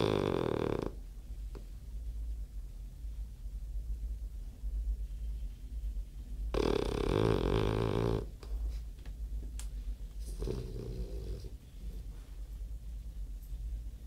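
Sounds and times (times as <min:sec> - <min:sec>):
dog snoring: 0:00.0 - 0:01.0, 0:06.5 - 0:08.5, 0:10.2 - 0:11.6.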